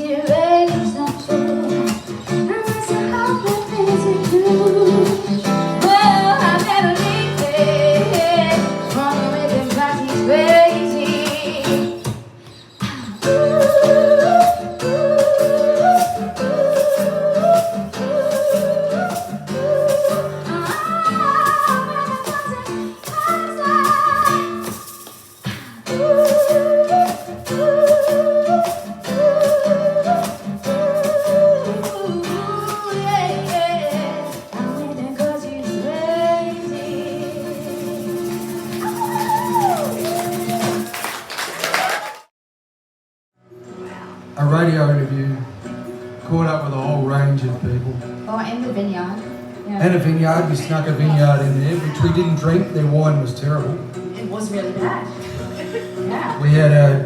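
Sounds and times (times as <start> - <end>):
person singing with vibrato: 0.0 - 12.1, 12.9 - 41.0.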